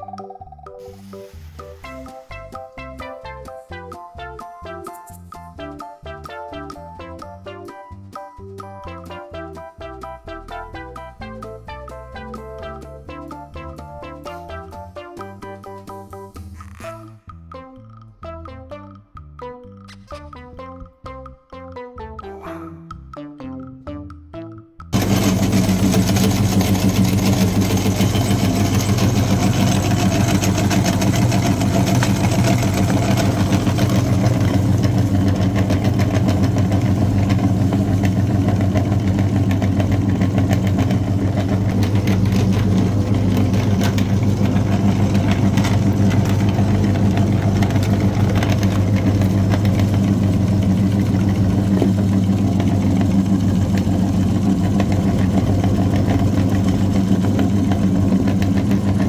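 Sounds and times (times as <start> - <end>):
engine idling: 25.0 - 59.0.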